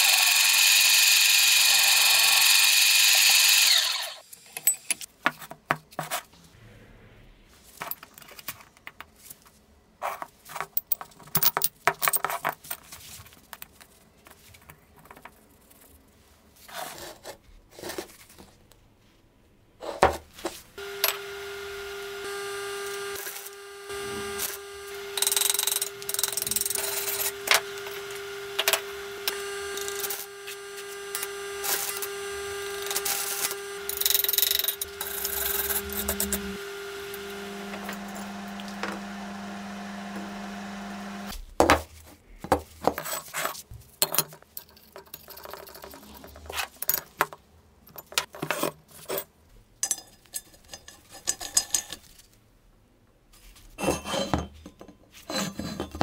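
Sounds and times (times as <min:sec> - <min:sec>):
metal cutting noise: 0:00.0 - 0:04.2, 0:20.8 - 0:41.3
power tool whining: 0:00.0 - 0:04.2, 0:20.8 - 0:41.3
tools and steel parts clinking: 0:25.2 - 0:28.0, 0:49.8 - 0:52.1, 0:53.8 - 0:56.0.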